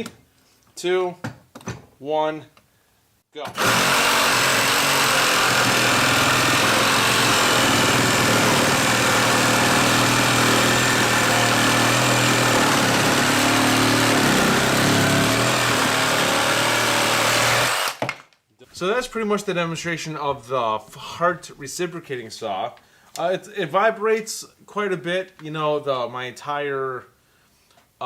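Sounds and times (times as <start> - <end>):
reciprocating saw cutting wood: 3.5 - 18.0.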